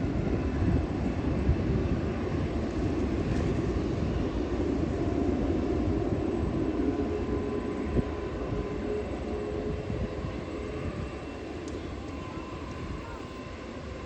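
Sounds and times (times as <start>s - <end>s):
jet engine rumble: 0.0s - 14.0s.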